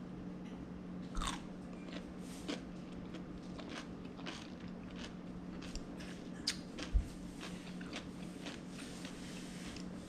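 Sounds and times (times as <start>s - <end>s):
crunchy pickle chewing: 1.1s - 9.2s.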